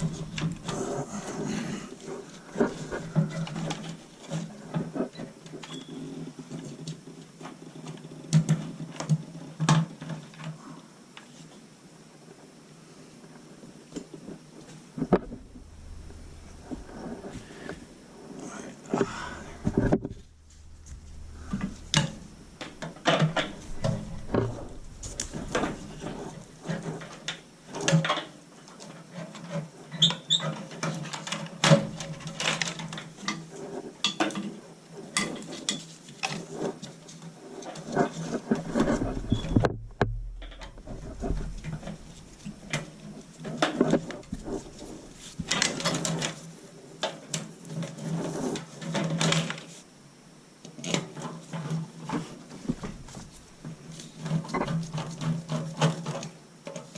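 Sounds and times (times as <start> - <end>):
faint steady hum: 0.0 - 56.9.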